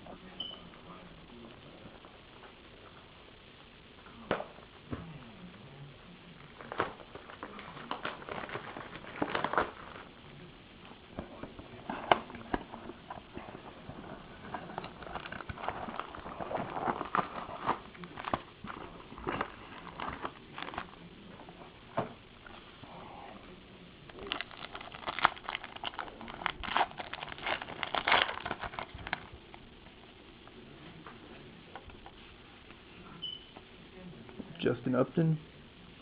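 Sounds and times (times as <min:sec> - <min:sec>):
wrapper rustling: 0:06.6 - 0:10.2, 0:11.7 - 0:21.4, 0:24.1 - 0:29.6.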